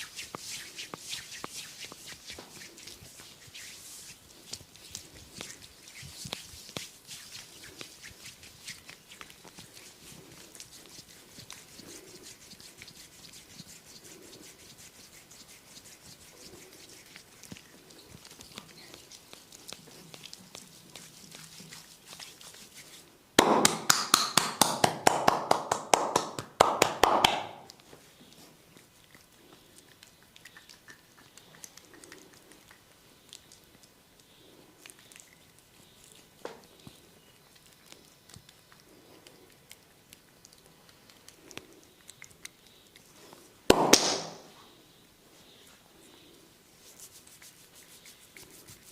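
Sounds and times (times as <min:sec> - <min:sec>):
hands slapping in percussive massage: 0:00.0 - 0:16.9, 0:18.3 - 0:27.8, 0:43.7 - 0:44.6
soft rubbing touches: 0:00.0 - 0:23.3, 0:31.8 - 0:48.9.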